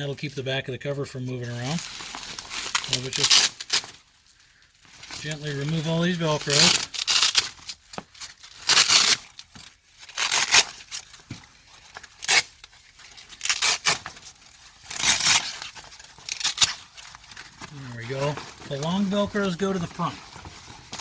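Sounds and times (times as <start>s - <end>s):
velcro strips ripping apart: 2.0s - 4.0s, 5.2s - 11.1s, 12.0s - 17.4s.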